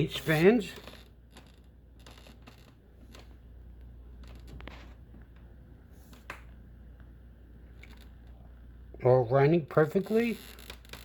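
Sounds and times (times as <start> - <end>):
light clicks and rustles: 0.3 - 7.1.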